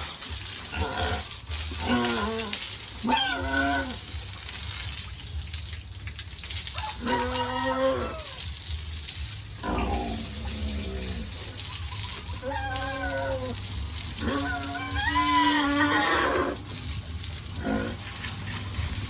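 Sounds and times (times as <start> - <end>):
pigs squealing: 0.7 - 4.0, 6.8 - 8.5, 9.6 - 16.6.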